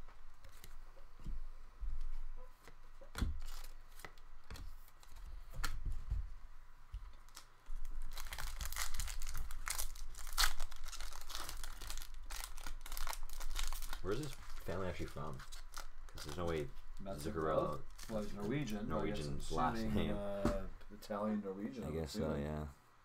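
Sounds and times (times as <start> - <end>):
foil wrapper tearing and crinkling: 3.2 - 5.1, 7.2 - 16.7, 17.3 - 18.3.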